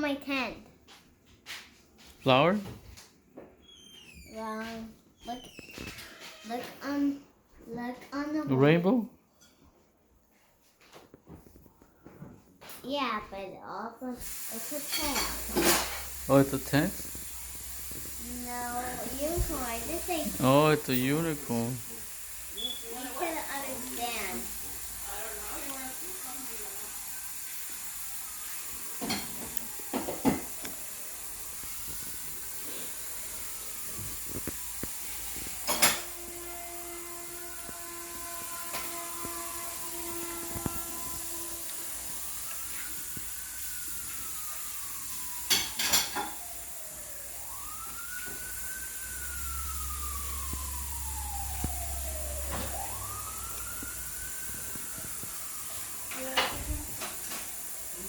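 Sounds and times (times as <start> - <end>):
steady hiss: 14.2 - 58.0
emergency vehicle siren wailing: 15.2 - 58.0.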